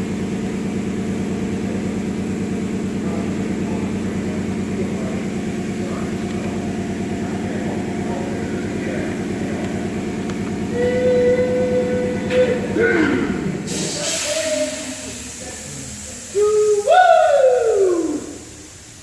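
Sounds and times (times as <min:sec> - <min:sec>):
car engine running: 0:00.0 - 0:13.8.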